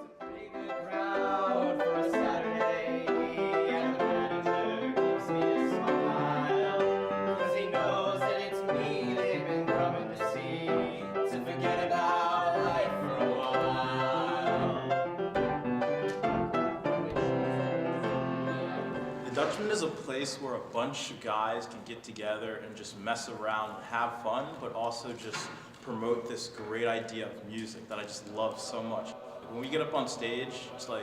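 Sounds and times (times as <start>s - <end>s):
choir singing in close harmony: 0.0s - 19.4s, 28.5s - 31.0s.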